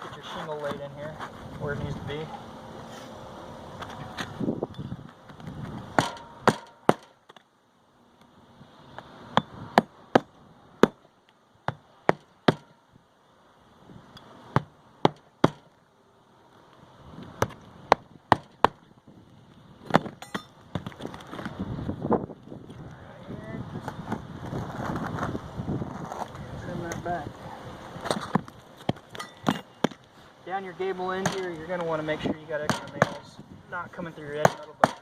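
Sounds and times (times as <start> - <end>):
hatchet hammering nails into shingles: 6.0 - 7.4, 9.4 - 12.8, 14.5 - 15.7, 17.4 - 18.8, 28.1 - 30.1, 31.1 - 31.6, 32.6 - 33.4, 34.3 - 35.0.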